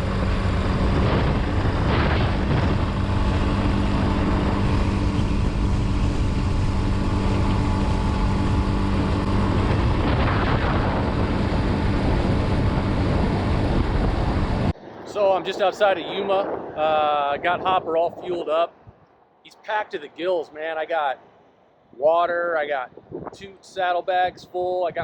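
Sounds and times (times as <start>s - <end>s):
motorcycle engine cruising: 0.0s - 14.8s
wind rush on microphone: 0.0s - 19.2s, 21.9s - 25.0s.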